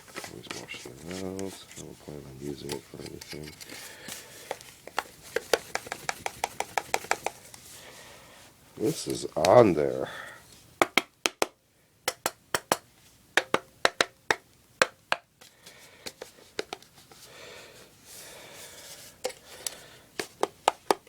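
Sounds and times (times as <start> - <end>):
rubbing and scraping: 0.0 - 7.3.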